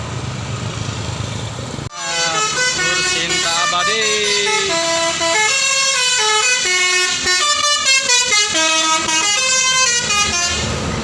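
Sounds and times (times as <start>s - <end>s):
multi-tone air horn tune: 1.9s - 10.7s.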